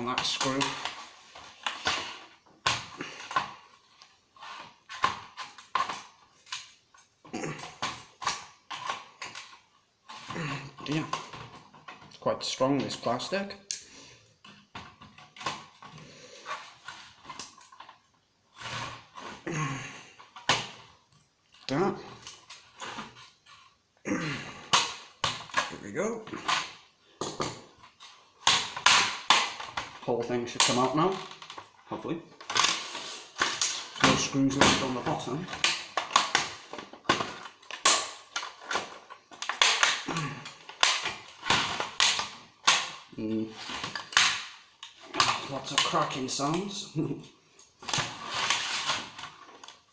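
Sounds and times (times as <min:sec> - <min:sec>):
plastic casing cracking: 0:24.6 - 0:31.8, 0:32.4 - 0:46.7.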